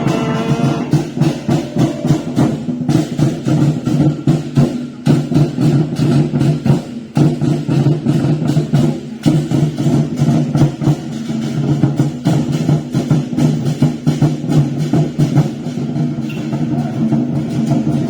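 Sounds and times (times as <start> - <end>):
sustained pitched tones: 0.0 - 3.2
drums beating rapidly: 0.0 - 18.0.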